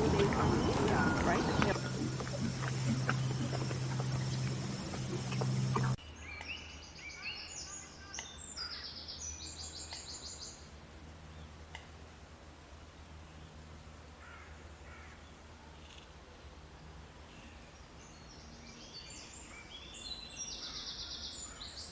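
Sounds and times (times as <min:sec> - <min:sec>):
steady low hum: 0:00.0 - 0:06.1
birds chirping: 0:00.0 - 0:10.3.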